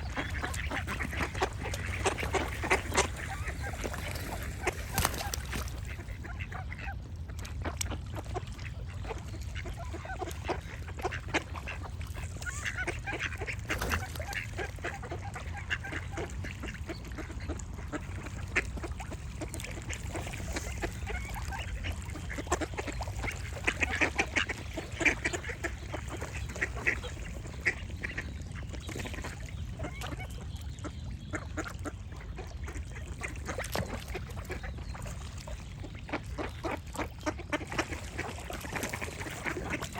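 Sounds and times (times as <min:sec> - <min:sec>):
ducks quacking: 0:00.0 - 0:39.9.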